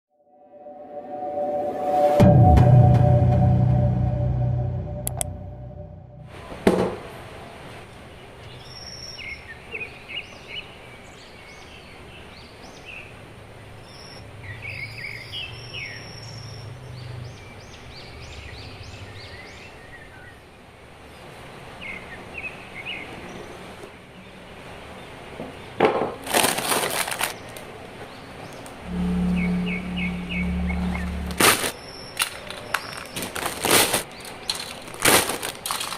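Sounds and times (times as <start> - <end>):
birds chirping: 8.4 - 20.4, 27.3 - 33.4
loud crackle: 31.3 - 35.9.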